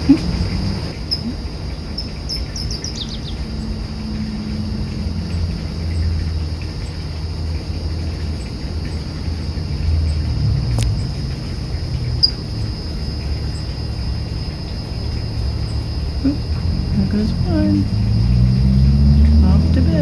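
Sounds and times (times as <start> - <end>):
crickets trilling: 0.0 - 20.0
steady low rumble: 0.0 - 20.0
short bird chirps: 2.0 - 3.4.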